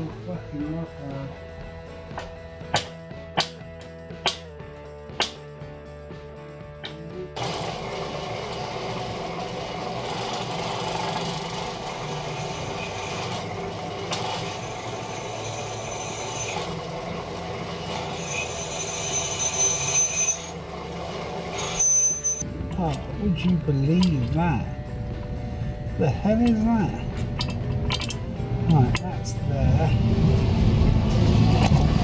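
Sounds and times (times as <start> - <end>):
harsh metalworking noise: 6.8 - 32.0
thin high whine: 11.8 - 17.0, 17.8 - 22.5.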